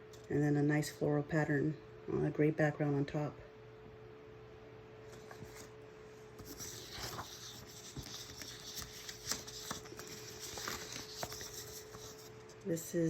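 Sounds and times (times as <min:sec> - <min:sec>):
cardstock paper rustling: 0:05.2 - 0:05.7, 0:06.4 - 0:12.6.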